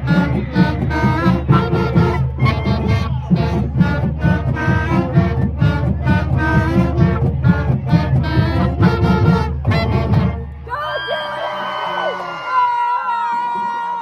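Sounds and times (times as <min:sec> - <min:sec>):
steady drumbeat: 0:00.0 - 0:10.6
brass band playing: 0:00.0 - 0:10.8.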